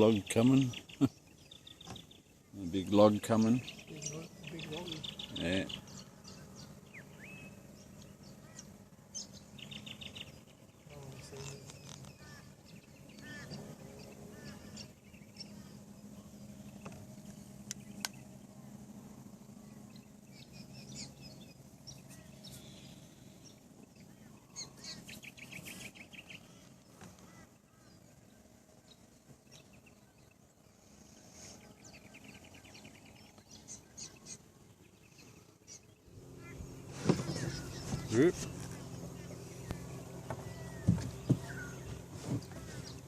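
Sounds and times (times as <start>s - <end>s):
wild birds chirping: 0.0s - 43.0s
fast rattling bird trills: 3.3s - 18.5s.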